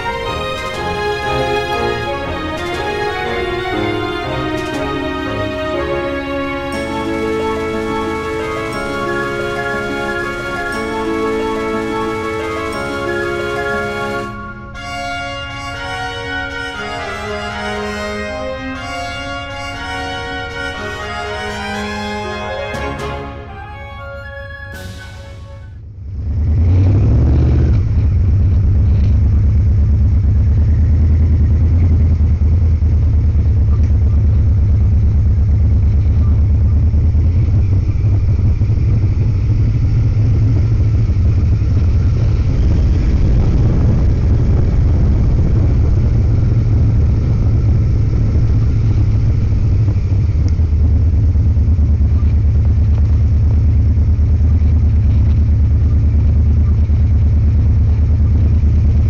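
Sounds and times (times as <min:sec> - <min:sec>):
motorcycle engine running: 0:25.8 - 0:59.0.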